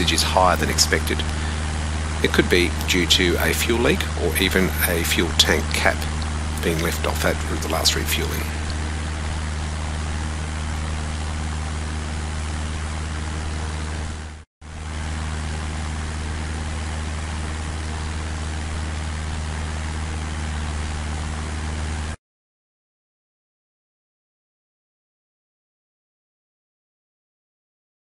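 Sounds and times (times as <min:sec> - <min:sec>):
engine running with low hum: 0:00.0 - 0:22.2.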